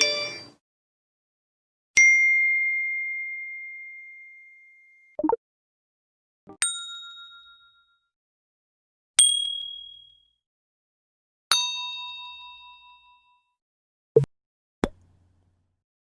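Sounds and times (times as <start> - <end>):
bright single-tone ding: 0.0 - 0.6
lower bell-like chime: 0.0 - 0.6.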